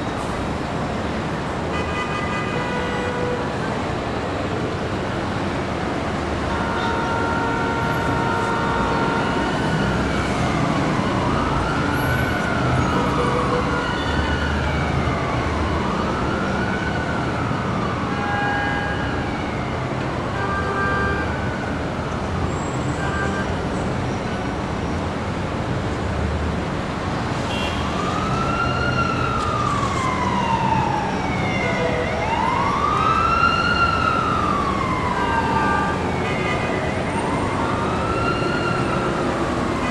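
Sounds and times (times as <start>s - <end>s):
city street traffic: 0.0s - 39.9s
emergency siren wailing: 6.0s - 24.8s, 27.4s - 39.9s.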